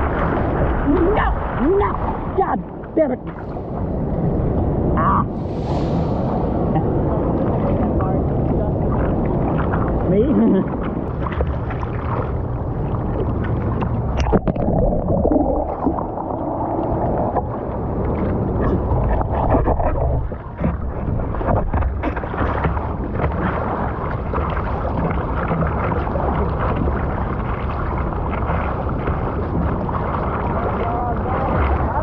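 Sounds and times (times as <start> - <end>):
steady low rumble: 0.0 - 32.0
surf water rushing and splashing: 0.0 - 32.0.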